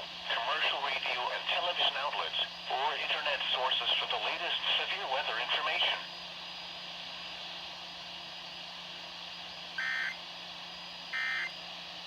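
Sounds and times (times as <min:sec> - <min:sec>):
radio hiss: 0:00.3 - 0:06.0
screechy data bursts: 0:09.8 - 0:10.2.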